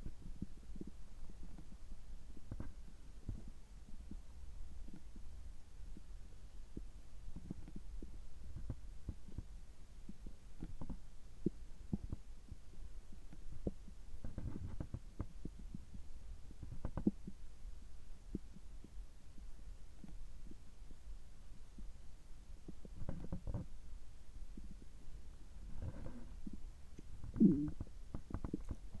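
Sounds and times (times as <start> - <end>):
stomach gurgling: 22.6 - 23.7, 25.6 - 29.0.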